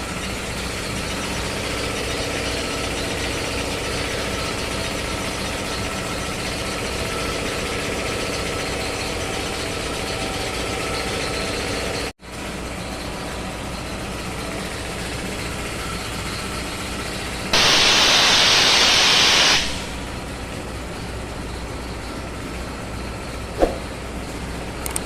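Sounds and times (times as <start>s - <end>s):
air compressor running: 0.0s - 24.9s
compressed air hissing: 17.6s - 20.2s.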